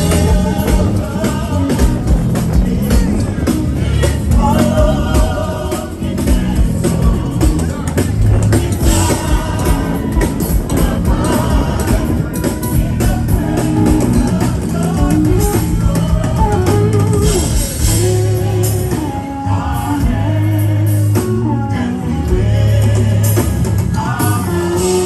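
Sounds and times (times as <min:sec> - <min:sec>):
gospel band playing: 0:00.0 - 0:25.0
person singing: 0:00.0 - 0:25.0.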